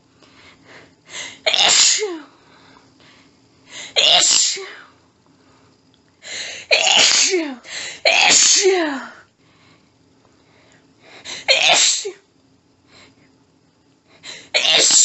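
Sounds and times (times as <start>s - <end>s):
woman sneezing: 1.3s - 2.3s, 3.9s - 4.9s, 6.6s - 9.2s, 11.3s - 12.2s, 14.4s - 15.0s.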